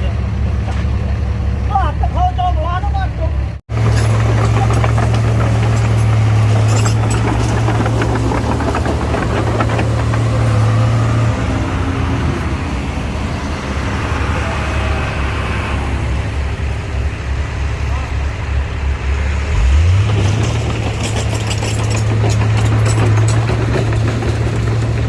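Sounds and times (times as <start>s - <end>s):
diesel engine running: 0.0s - 25.0s
metal clanks: 3.7s - 10.6s, 20.0s - 25.0s.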